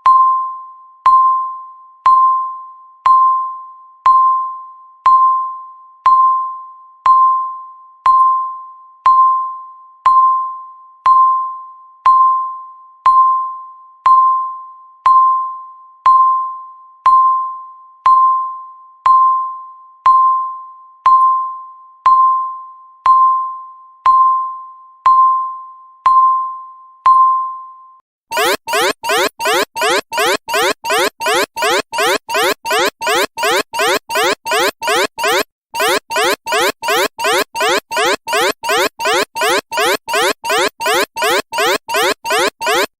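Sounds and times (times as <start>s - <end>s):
countdown timer beeps: 28.3s - 42.9s
rapidly pulsing alarm: 28.3s - 42.9s.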